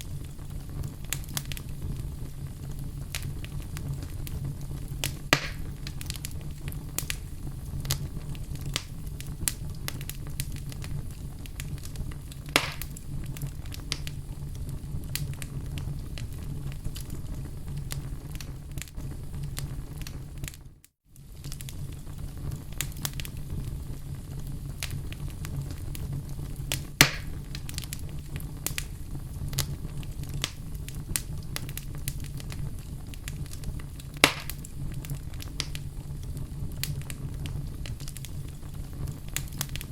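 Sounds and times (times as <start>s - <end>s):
fire crackling and popping: 0.0s - 39.9s.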